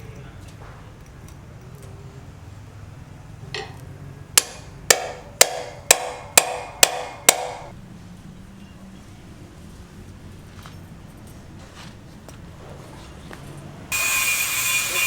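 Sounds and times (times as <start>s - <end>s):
hammer blows ringing: 4.4s - 7.7s, 13.9s - 15.0s.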